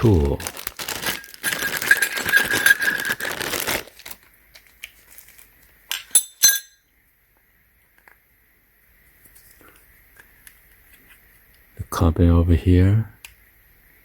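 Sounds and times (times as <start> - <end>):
rustling of tools and packaging: 0.0 - 6.7
hard pieces clinking together: 1.1 - 3.4, 5.9 - 6.8.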